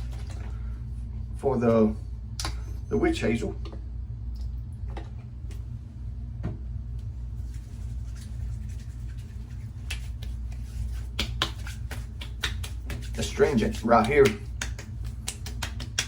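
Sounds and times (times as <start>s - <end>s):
low room hum: 0.0s - 16.0s.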